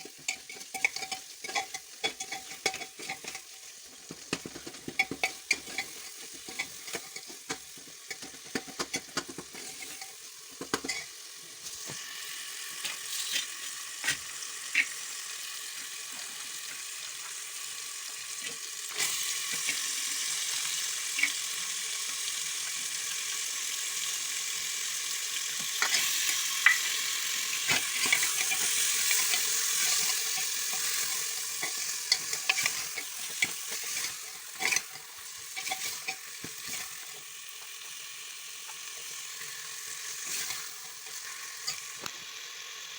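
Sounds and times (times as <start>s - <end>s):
spatula scraping a pan: 0.0s - 11.2s, 25.6s - 37.2s, 40.1s - 42.1s
food sizzling in a pan: 0.0s - 42.9s.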